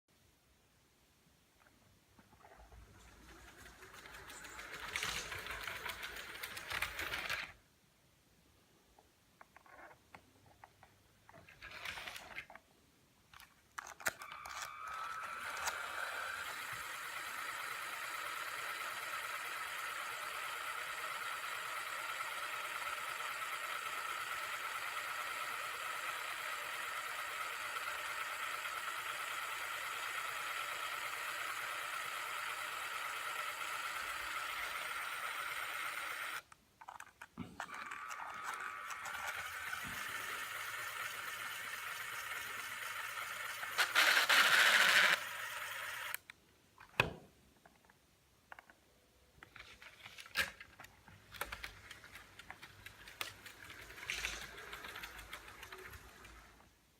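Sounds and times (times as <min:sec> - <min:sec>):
toy train motors running: 0:02.4 - 0:07.6, 0:13.8 - 0:36.5, 0:37.6 - 0:46.3, 0:49.8 - 0:56.8.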